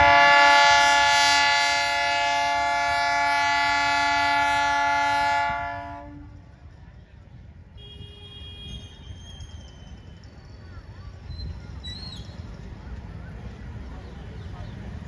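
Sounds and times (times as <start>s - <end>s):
train horn blast: 0.0s - 6.5s, 7.8s - 8.9s.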